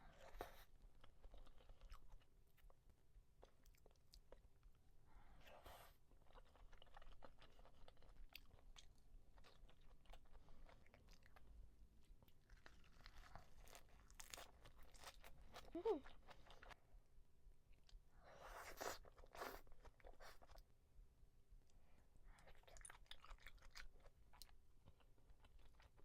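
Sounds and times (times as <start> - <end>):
person chewing: 6.2 - 11.4, 12.1 - 16.8, 22.4 - 26.0.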